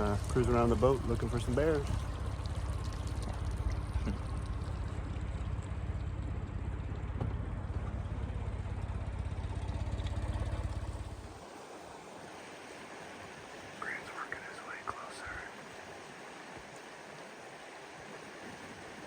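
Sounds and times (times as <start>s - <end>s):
boat engine rumbling: 0.0s - 11.7s
water and hull noise: 0.0s - 19.0s
faint hiss: 11.7s - 19.0s.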